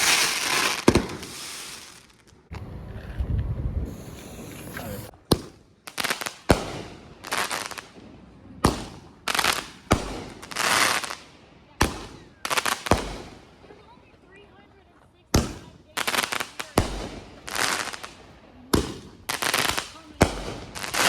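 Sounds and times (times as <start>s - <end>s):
fireworks bangs: 0.0s - 2.5s, 3.8s - 21.0s
hissing crackle: 0.0s - 2.5s, 3.8s - 5.2s.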